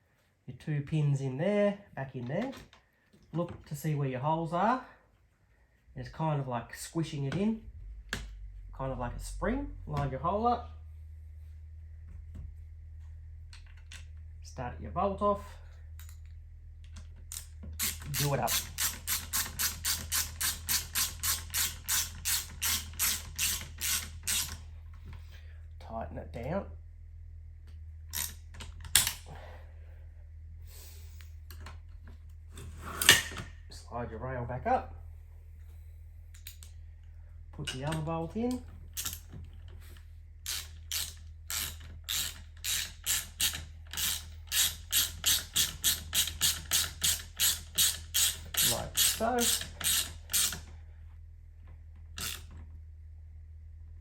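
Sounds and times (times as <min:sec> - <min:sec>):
ratchet wrench clicking: 0:17.3 - 0:24.6, 0:39.0 - 0:39.2, 0:40.4 - 0:50.7, 0:52.2 - 0:52.5.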